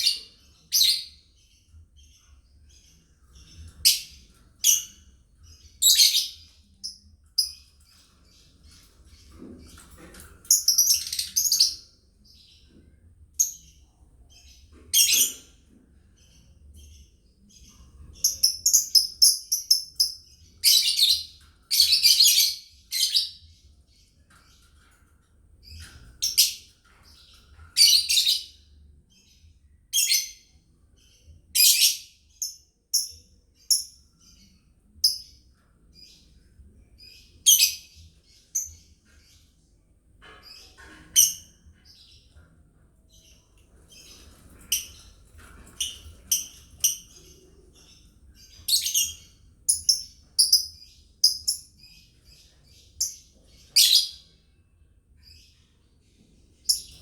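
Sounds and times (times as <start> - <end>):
lovebirds chirping: 0.0 - 24.8, 40.2 - 54.4, 55.2 - 57.0.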